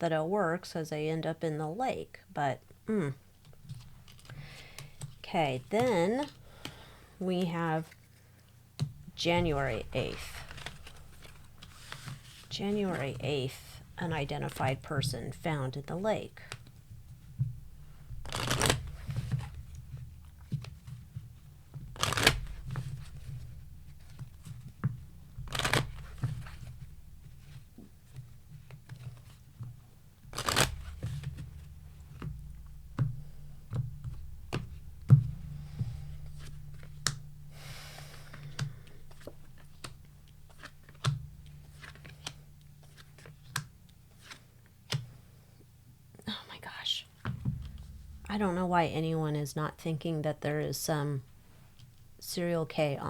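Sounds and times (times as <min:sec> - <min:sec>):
low steady hum: 0:00.0 - 0:53.0
cards clicking and tapping: 0:03.4 - 0:08.2, 0:08.8 - 0:15.4, 0:16.4 - 0:45.3
cards shuffling: 0:03.4 - 0:45.2.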